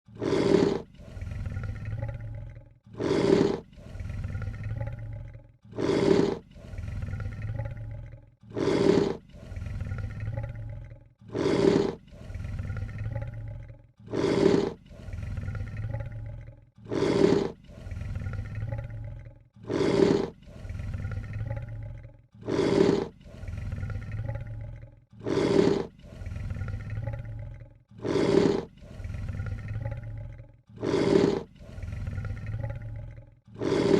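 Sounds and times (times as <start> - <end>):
lion low growl: 0.0 - 33.9
lion snarling hiss: 0.2 - 2.0, 2.9 - 4.9, 5.7 - 7.6, 8.5 - 10.4, 11.3 - 13.2, 14.1 - 16.0, 16.8 - 18.8, 19.6 - 21.6, 22.4 - 24.4, 25.2 - 27.1, 28.0 - 29.9, 30.8 - 32.7, 33.6 - 33.9.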